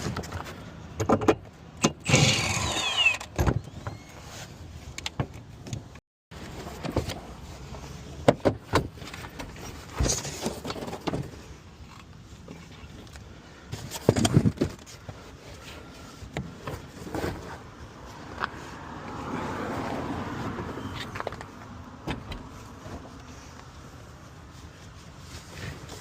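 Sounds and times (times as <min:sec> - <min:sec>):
tool clicks and clanks: 0:01.0 - 0:03.6
car passing by: 0:18.0 - 0:22.0.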